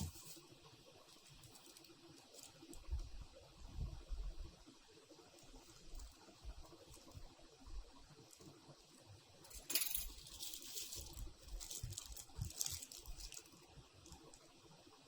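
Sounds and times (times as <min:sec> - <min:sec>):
packaging rustling and crinkling: 0:10.1 - 0:14.5.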